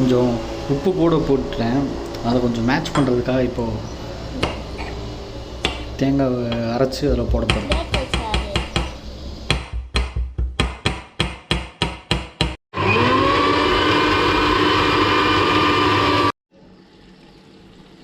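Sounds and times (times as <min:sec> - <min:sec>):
electric mixer grinder whining: 0:12.7 - 0:16.4.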